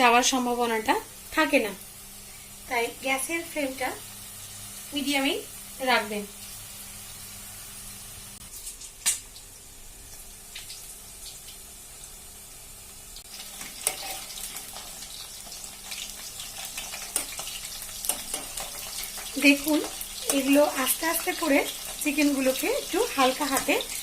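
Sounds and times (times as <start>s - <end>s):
chicken sizzling in hot oil: 0.0s - 24.0s
oil crackling and popping: 8.4s - 11.7s, 13.1s - 24.0s.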